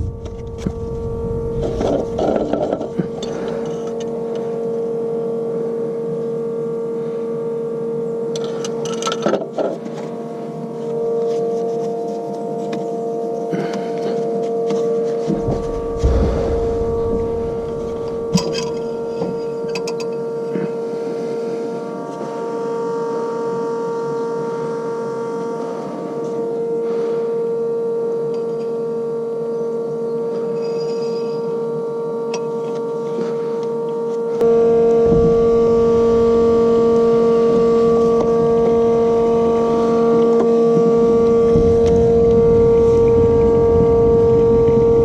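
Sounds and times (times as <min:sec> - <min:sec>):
farm machinery drone: 0:00.0 - 0:03.5, 0:15.3 - 0:19.2, 0:34.4 - 0:45.0
constant machine whine: 0:00.0 - 0:20.7, 0:32.3 - 0:45.0.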